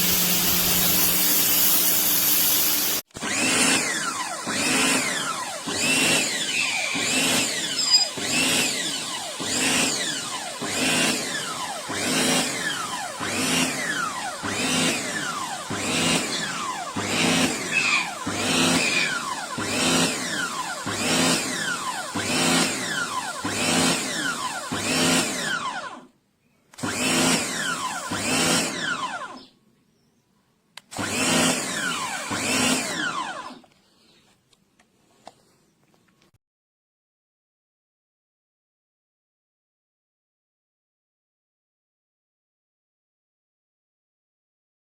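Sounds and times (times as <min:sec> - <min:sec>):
pressure washer motor surging: 0:00.0 - 0:26.0, 0:26.8 - 0:29.3, 0:31.0 - 0:33.6.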